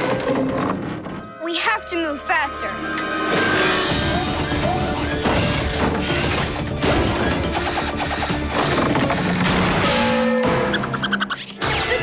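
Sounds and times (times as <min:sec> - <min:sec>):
orchestral action music: 0:01.4 - 0:12.0
cartoon metal clanking and crashing: 0:03.3 - 0:12.0.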